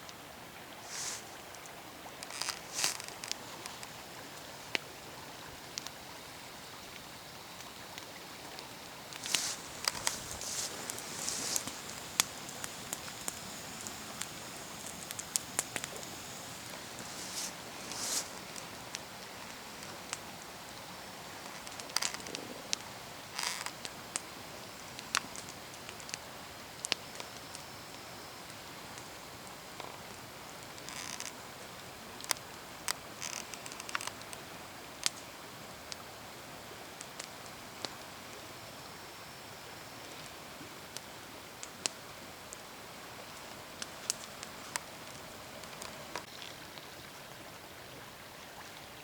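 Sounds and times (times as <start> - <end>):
faint steady hiss: 0.0 - 49.0
brief rustle: 0.9 - 1.3, 9.2 - 18.8
campfire crackling and popping: 2.1 - 4.9, 7.9 - 27.6, 28.5 - 36.1, 40.1 - 46.3.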